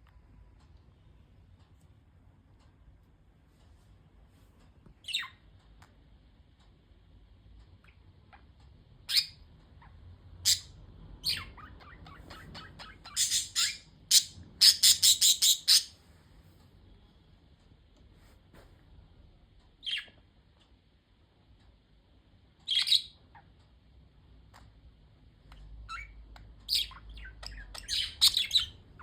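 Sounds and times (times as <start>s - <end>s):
budgerigars chirping and squawking: 5.0s - 5.4s, 7.8s - 16.0s, 19.8s - 20.1s, 22.7s - 23.6s, 25.6s - 29.0s.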